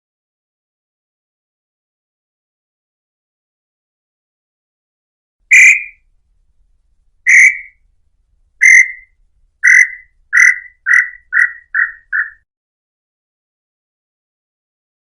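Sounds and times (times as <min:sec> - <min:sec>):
bird singing whistled notes: 0:05.5 - 0:06.0, 0:07.3 - 0:07.8, 0:08.6 - 0:12.4.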